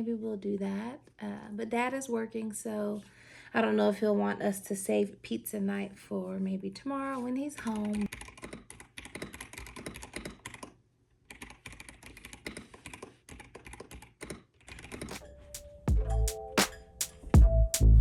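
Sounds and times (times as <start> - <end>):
typing on keyboard: 7.7 - 15.7
music with deep bass: 15.9 - 18.0.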